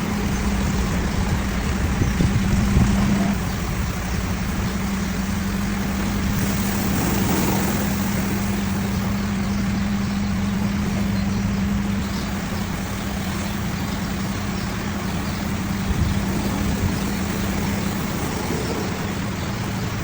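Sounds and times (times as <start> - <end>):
low hum: 0.0 - 20.0
washing machinery and water rushing: 0.0 - 20.0.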